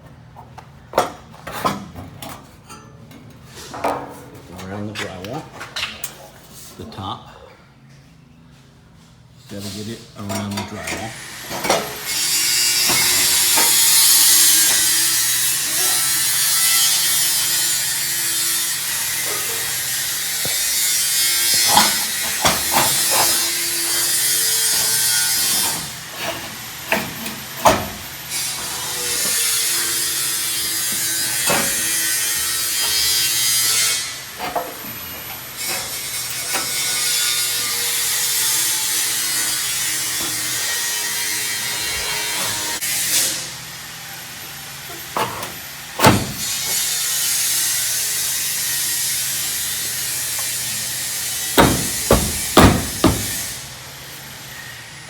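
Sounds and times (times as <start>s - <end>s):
multi-tool cutting drywall: 11.4s - 43.7s, 44.4s - 53.7s
knocks of metal frame and tool: 12.8s - 15.4s, 19.1s - 28.0s, 45.0s - 46.8s, 51.5s - 53.6s.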